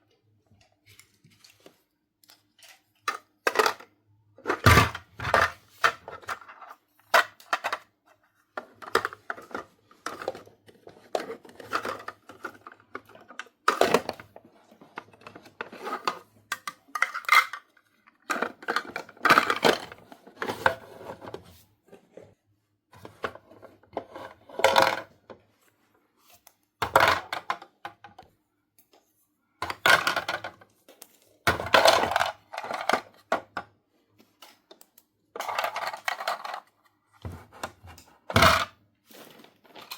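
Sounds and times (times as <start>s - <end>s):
plastic toy pieces clattering: 8.6s - 14.3s, 15.2s - 20.6s, 29.6s - 33.6s, 35.4s - 36.8s.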